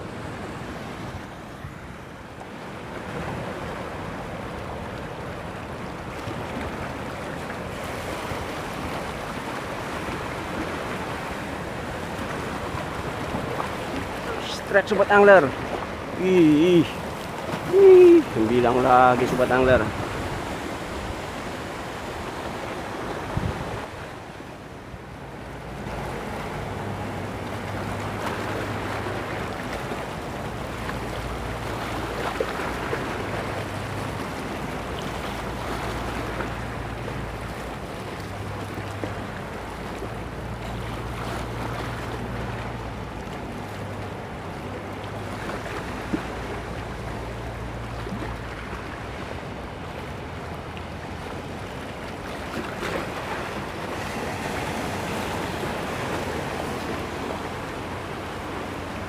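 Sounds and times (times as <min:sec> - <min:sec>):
sea surf washing in: 0:00.0 - 0:59.0
wind buffeting microphone: 0:16.8 - 0:24.1.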